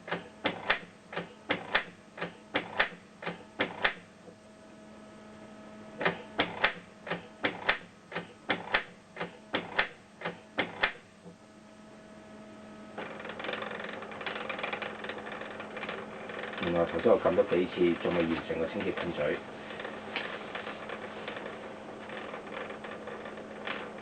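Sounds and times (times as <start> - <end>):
printer rattling whir: 0.0 - 4.1, 6.0 - 11.3, 12.9 - 24.0
printer motor hum: 0.0 - 24.0
printer mechanism clacking: 6.0 - 11.0, 13.0 - 21.4.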